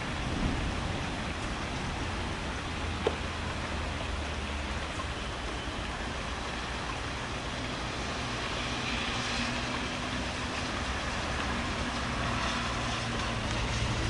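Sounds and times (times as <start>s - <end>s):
low thunder rumble: 0.0s - 3.4s
passing vehicle hum: 0.0s - 14.0s
steady rain falling: 0.0s - 14.0s.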